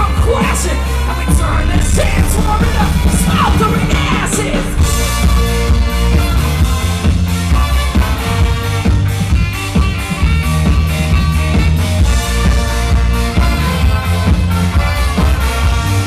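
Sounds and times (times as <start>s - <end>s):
rock band playing: 0.0s - 16.0s
person singing: 1.1s - 5.3s.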